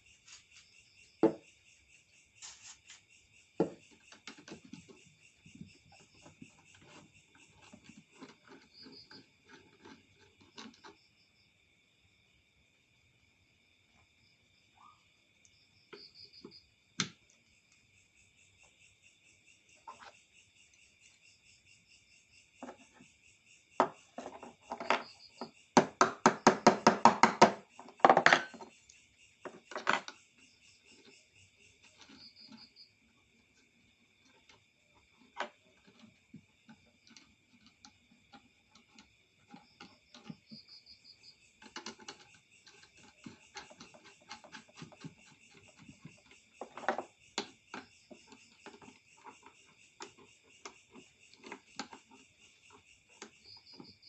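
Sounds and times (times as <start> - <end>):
crickets chirping: 0.0 - 54.0
knocks and clatter: 23.8 - 28.8, 29.4 - 30.2, 41.6 - 54.0.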